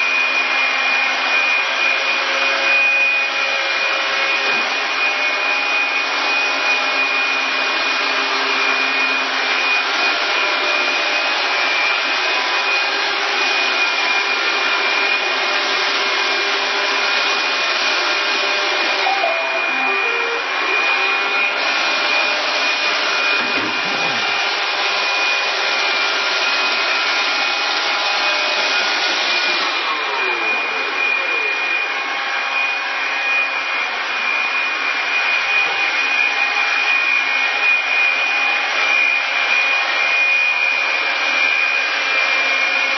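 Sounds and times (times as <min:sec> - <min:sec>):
robot motors and brushes whirring: 0:20.5 - 0:24.5.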